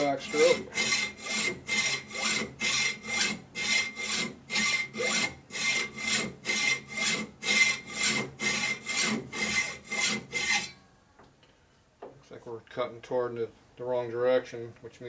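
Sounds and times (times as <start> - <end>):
hacksaw cutting metal: 0.0 - 10.8.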